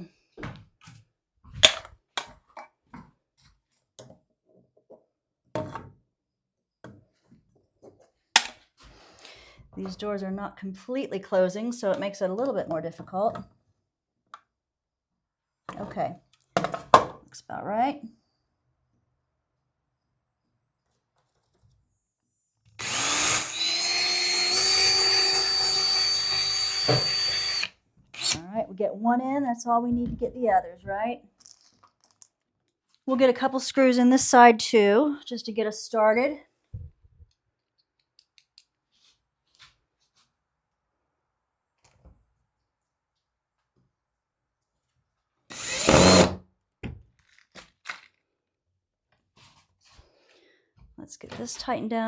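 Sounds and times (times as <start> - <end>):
power drill driving a screw: 22.8 - 28.4, 45.5 - 46.4.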